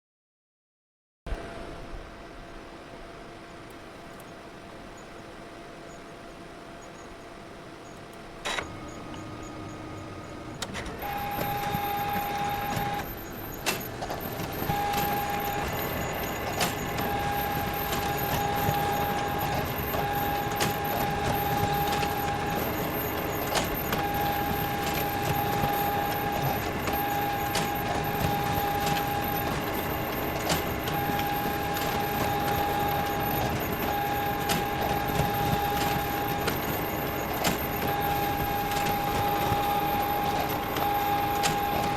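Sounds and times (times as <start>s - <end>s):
photocopier whirring: 8.0s - 41.9s
photocopier clicks: 10.5s - 41.9s.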